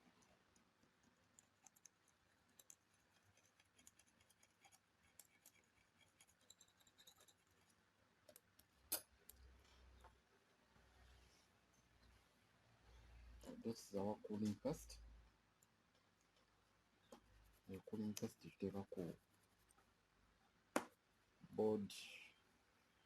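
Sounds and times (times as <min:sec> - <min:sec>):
small parts and tools clicking: 0:00.0 - 0:09.6.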